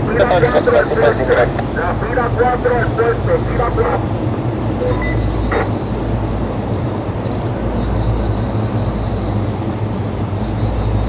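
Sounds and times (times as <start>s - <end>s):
faint high whine: 0.0s - 6.2s
jet engines rumbling: 0.0s - 6.8s.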